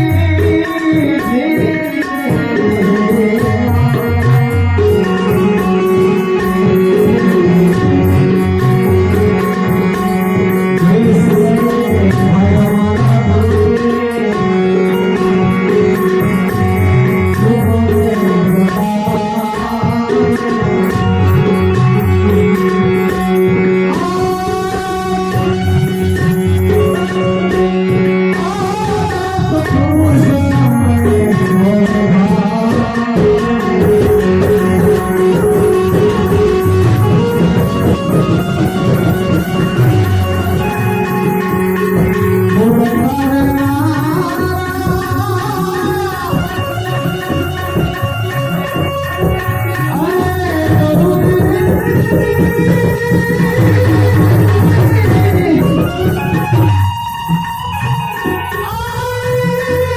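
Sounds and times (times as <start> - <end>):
hand drum beat: 0.0 - 59.9
plucked string melody: 0.0 - 59.9
held drone notes: 2.1 - 32.5.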